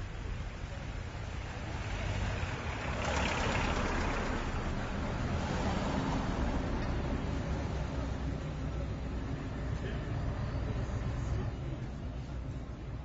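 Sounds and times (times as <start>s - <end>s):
low traffic rumble: 0.0s - 13.0s
vehicle passing by: 1.7s - 8.3s.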